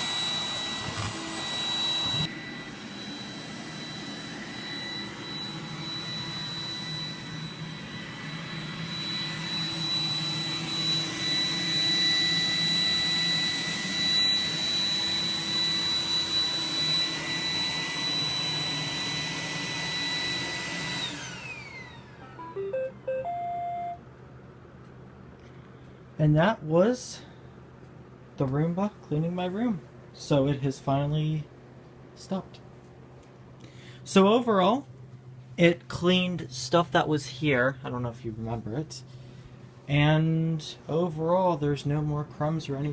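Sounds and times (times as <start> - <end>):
robot vacuum running: 0.0 - 23.4
electronic beep tones: 22.2 - 24.0.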